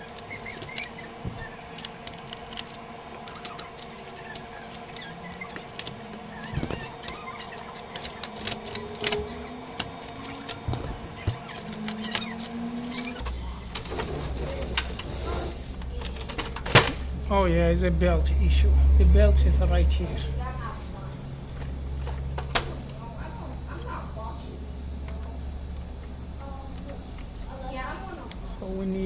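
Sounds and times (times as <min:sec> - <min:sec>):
plastic parts clicking and rattling: 0:00.0 - 0:14.0
faint steady hum: 0:00.0 - 0:29.0.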